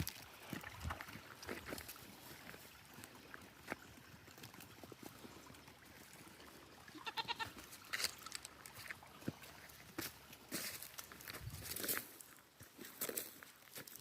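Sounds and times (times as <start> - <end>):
young goat bleating: 6.9 - 7.7.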